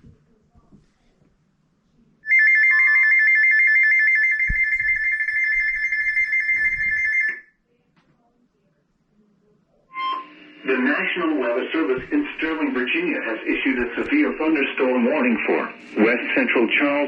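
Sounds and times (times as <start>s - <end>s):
pulsing two-tone electronic beep: 9.9s - 10.5s.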